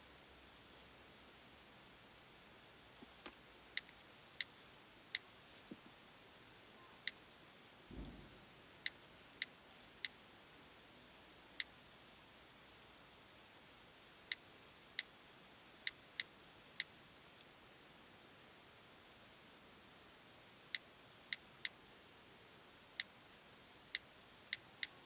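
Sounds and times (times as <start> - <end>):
soft low thump: 7.9 - 8.4.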